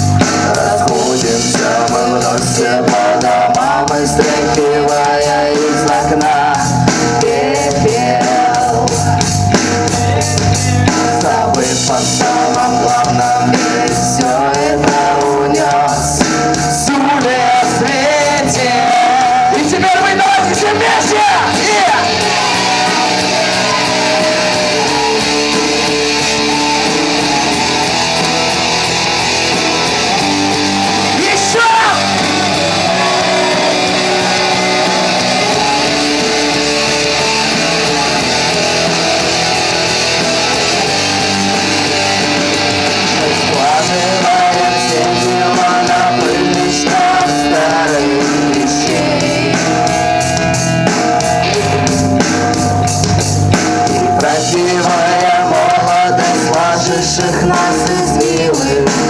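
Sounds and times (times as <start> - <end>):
live rock band guitar-led: 0.0 - 59.0
person singing: 0.1 - 52.0, 53.9 - 59.0.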